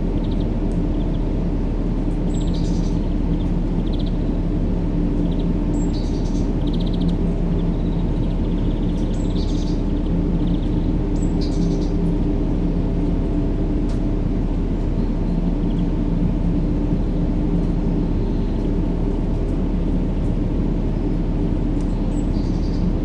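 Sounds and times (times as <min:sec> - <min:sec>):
deep rumbling drone: 0:20.0 - 0:23.0.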